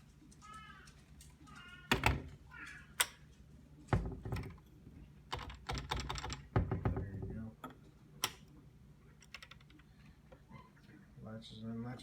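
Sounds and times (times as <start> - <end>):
cabinet door knocking: 5.7 - 7.4.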